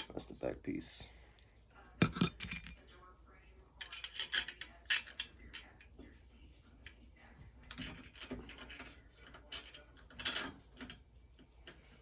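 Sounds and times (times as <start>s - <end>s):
small metal parts clinking: 2.0s - 2.8s.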